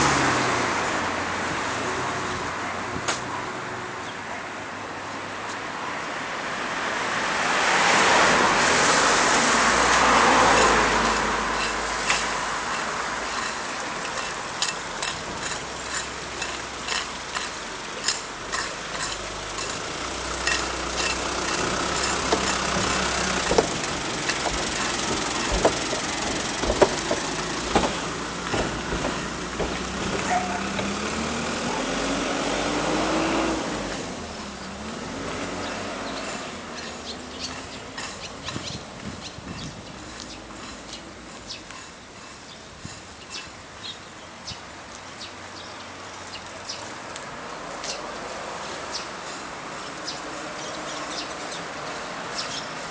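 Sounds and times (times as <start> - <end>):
vehicle passing: 6.5 - 42.4
vehicle engine pulling away: 7.5 - 42.3
sharp knocks: 20.5 - 31.2.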